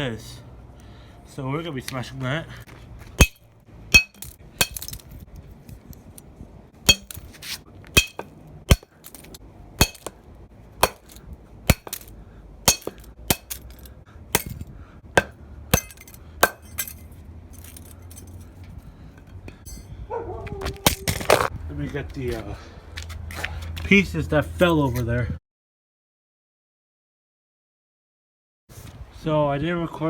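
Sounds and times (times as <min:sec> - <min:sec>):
bat striking broken clock: 0:04.0 - 0:05.0, 0:06.9 - 0:07.3, 0:08.0 - 0:10.2, 0:10.8 - 0:12.1, 0:12.7 - 0:14.6, 0:15.2 - 0:17.0.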